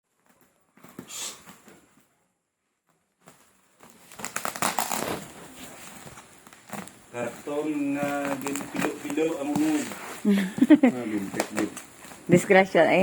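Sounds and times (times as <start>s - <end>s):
cardboard packaging crinkling and tearing: 3.3s - 10.3s, 10.9s - 12.3s.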